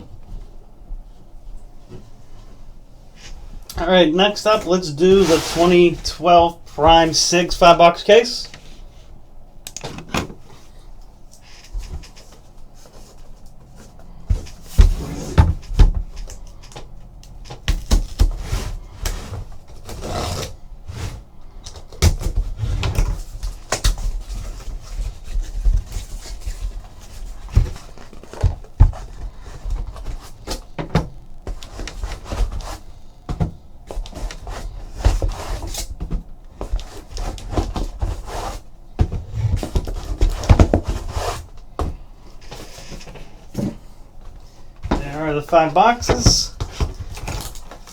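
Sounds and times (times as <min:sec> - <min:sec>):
cardboard boxes knocking and rustling: 0:11.7 - 0:20.4, 0:21.8 - 0:47.9.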